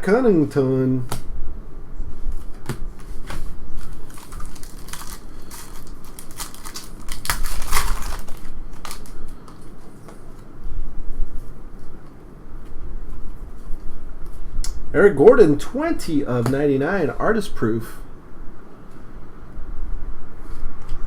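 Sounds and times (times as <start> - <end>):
foil wrapper crinkling and tearing: 3.2 - 9.7.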